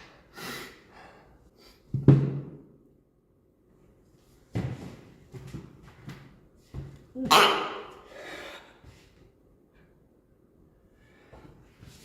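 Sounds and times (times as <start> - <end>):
man sneezing: 7.2 - 8.2.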